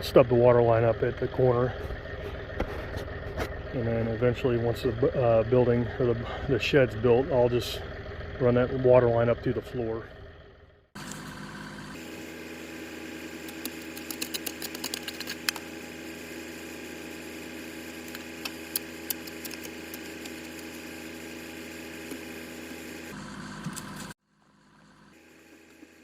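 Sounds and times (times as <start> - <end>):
engine running steadily: 0.0 - 26.0
sharp clicks and knocks: 13.5 - 15.7.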